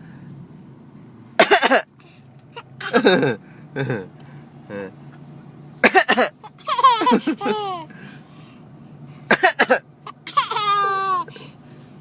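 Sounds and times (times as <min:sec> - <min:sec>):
small child coughing: 0:01.4 - 0:01.9, 0:02.8 - 0:03.3, 0:05.8 - 0:07.8, 0:09.3 - 0:11.2
child laughing: 0:06.5 - 0:07.9, 0:10.4 - 0:11.3.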